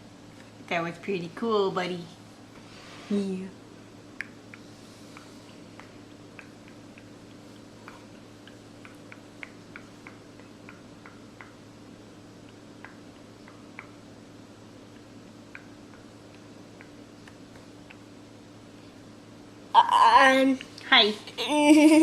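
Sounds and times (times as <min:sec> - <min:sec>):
steady low hum: 0:00.0 - 0:22.0
mouth clicking: 0:04.2 - 0:11.6.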